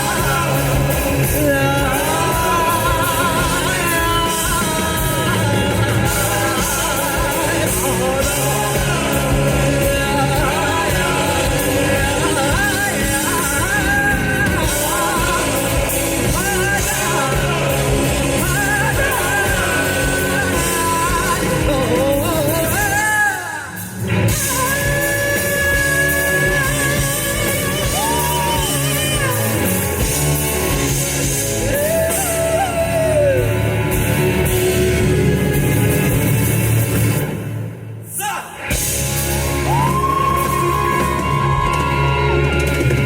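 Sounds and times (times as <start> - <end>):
live rock band playing: 0.0 - 43.0.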